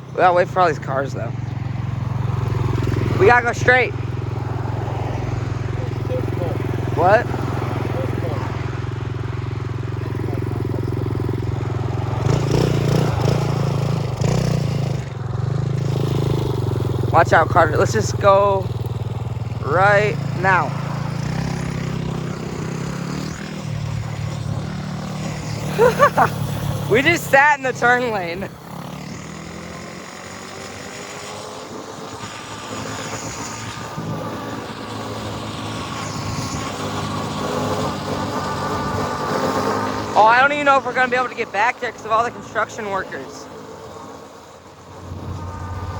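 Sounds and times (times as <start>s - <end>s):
small motorbike engine idling: 0.0s - 33.2s.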